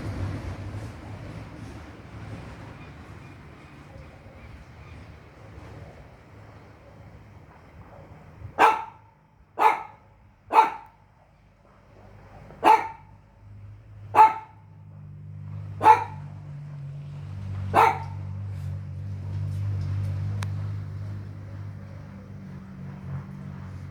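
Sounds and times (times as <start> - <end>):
dog barking: 8.6 - 11.0, 12.5 - 13.2, 14.0 - 14.7, 15.7 - 16.4, 17.6 - 18.5.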